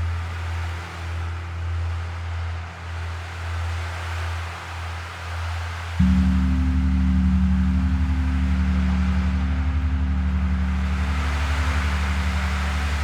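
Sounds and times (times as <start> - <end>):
deep gong ringing: 6.0 - 13.0.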